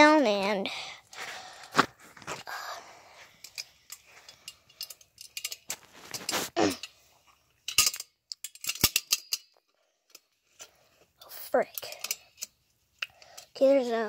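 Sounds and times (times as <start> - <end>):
metal tools clicking and clinking: 3.4 - 7.0, 7.6 - 10.4, 11.2 - 13.5.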